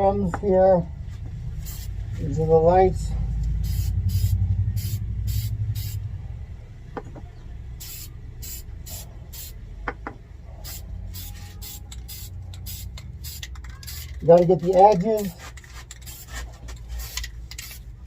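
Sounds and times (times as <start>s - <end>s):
low rumble: 0.0s - 7.8s
spray paint can hissing: 1.6s - 2.0s, 3.6s - 6.0s, 7.8s - 9.6s, 10.6s - 17.9s.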